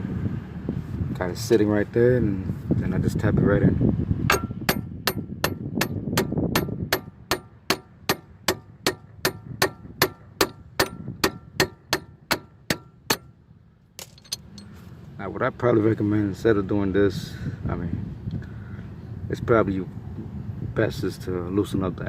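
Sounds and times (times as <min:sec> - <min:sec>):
hammer striking metal stud: 0:04.3 - 0:13.3.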